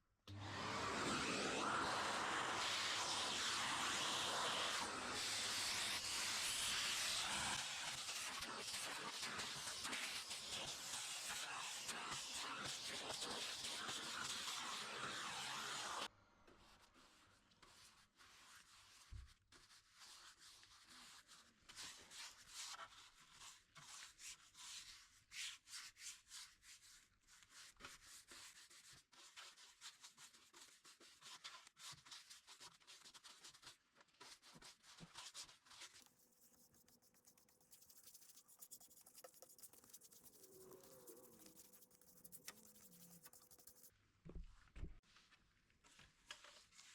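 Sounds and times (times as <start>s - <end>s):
hand rubbing on wood: 36.0s - 43.9s.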